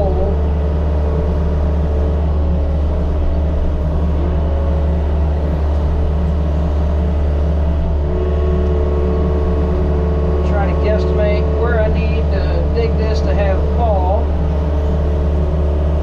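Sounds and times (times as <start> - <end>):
excavator engine droning: 0.0 - 16.0.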